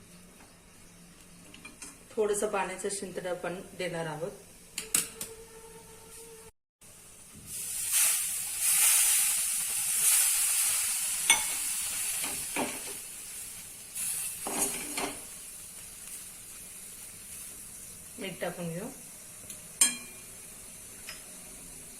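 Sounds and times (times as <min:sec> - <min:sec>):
water sizzling in hot pan: 0:06.9 - 0:21.9.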